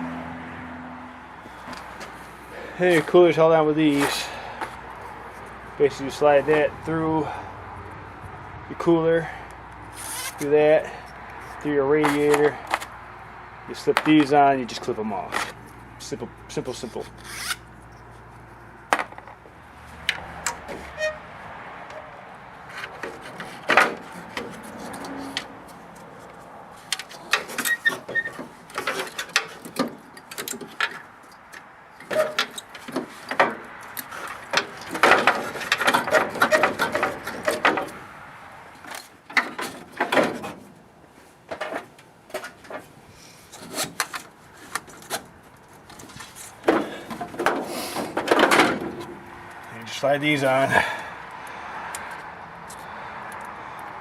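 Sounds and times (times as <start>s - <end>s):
plastic ties scraping and clicking: 9.5s - 13.0s, 13.7s - 18.5s, 21.9s - 38.0s, 41.5s - 48.3s.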